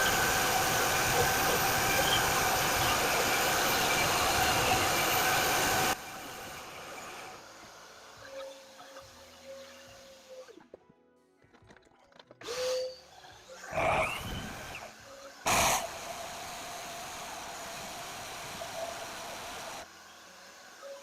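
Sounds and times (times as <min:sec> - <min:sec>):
hole saw cutting concrete: 0:00.0 - 0:07.4, 0:12.5 - 0:19.9
shop vac running: 0:00.0 - 0:10.6, 0:12.4 - 0:21.0.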